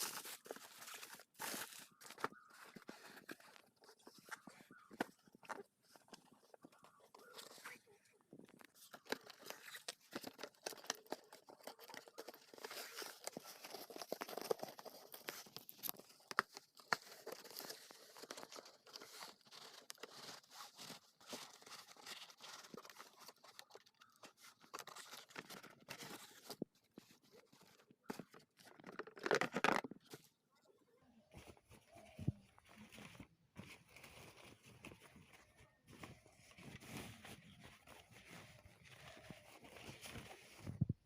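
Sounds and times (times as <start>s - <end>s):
plastic packaging rustling: 0.0s - 30.3s.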